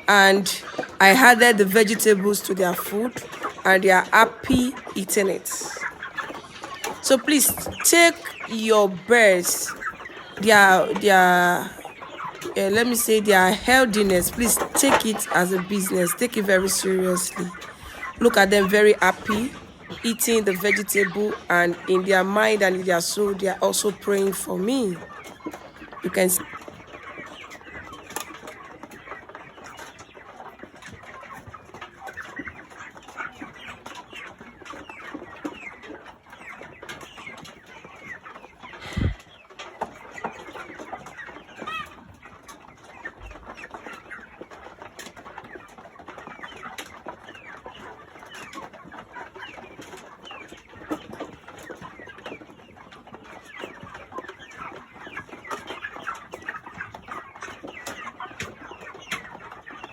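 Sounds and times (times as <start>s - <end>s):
chickens cheeping and clucking: 0.0s - 59.9s.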